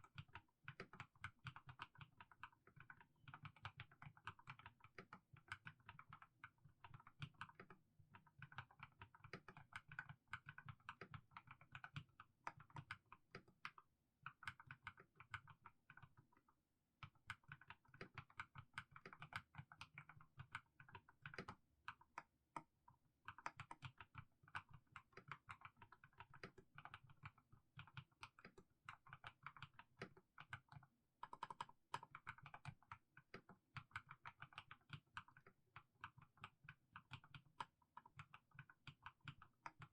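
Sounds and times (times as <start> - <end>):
mechanical keyboard typing: 17.3 - 22.2, 23.3 - 39.9.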